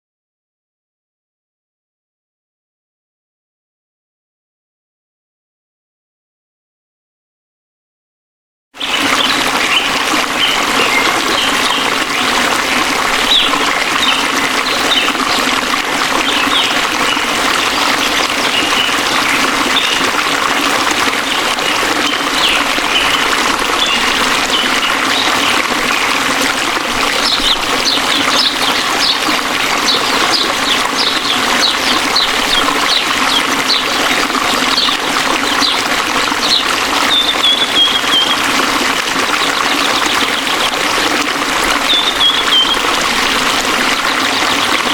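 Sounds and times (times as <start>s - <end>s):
birds chirping: 8.8s - 20.3s, 21.2s - 38.6s, 41.8s - 43.1s
waterfall rushing: 8.8s - 44.9s.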